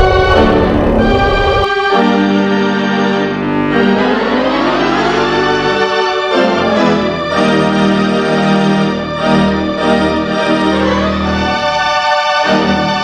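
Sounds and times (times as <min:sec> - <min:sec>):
rising synth sweep: 0:00.0 - 0:02.3
organ-like keyboard chords: 0:00.0 - 0:13.0.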